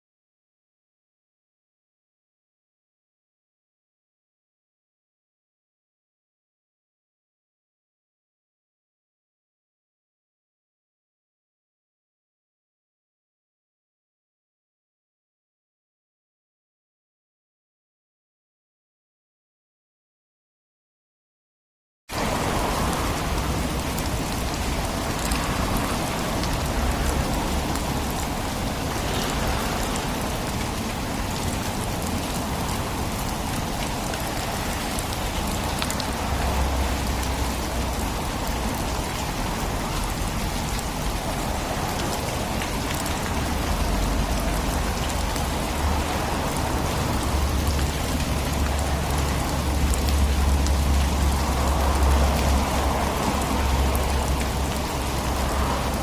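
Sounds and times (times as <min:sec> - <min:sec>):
rain falling on road: 0:22.1 - 0:56.0.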